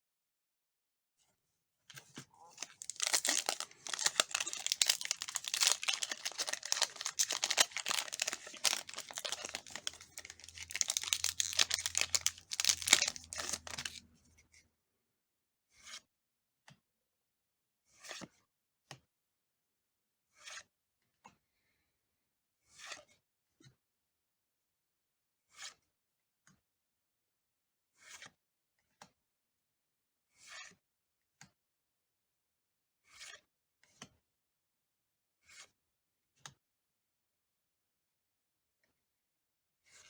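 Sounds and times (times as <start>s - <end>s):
foil wrapper tearing and crinkling: 2.5s - 14.0s.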